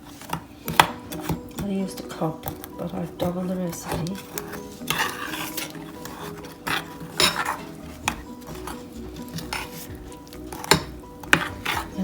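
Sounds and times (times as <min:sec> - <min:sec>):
utensil clinking against bowl: 0:00.3 - 0:12.0.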